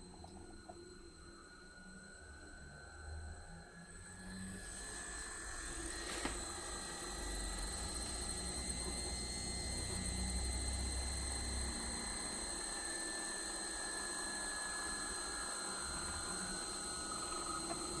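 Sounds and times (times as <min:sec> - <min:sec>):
machine high-pitched whine: 0:00.0 - 0:18.0.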